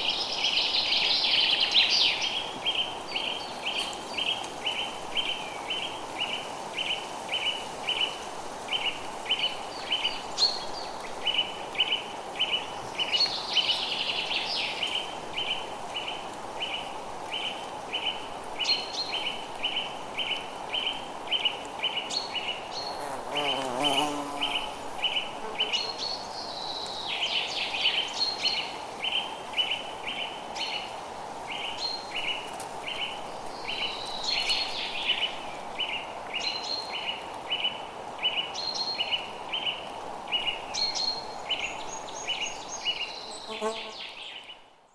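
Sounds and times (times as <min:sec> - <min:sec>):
constant hiss: 0:00.0 - 0:44.9.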